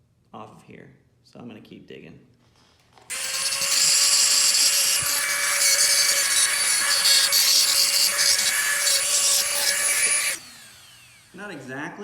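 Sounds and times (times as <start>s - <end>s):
power tool grinding steel: 3.1s - 11.4s.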